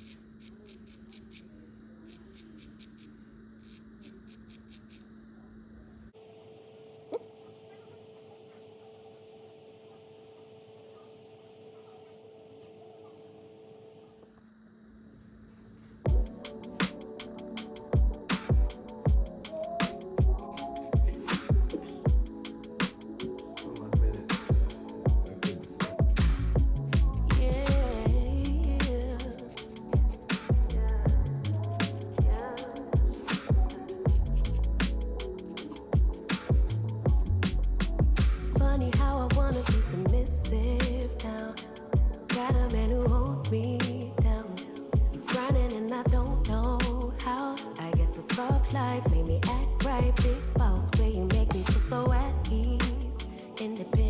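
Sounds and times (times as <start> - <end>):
crackles of hair being cut: 0.0 - 5.1, 6.6 - 14.5
r and b song with drums: 16.1 - 54.0.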